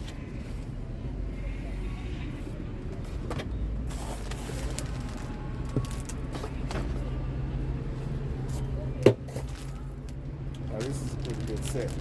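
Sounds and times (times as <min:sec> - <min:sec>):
plastic packaging crinkling: 0:04.0 - 0:06.6, 0:09.3 - 0:12.0.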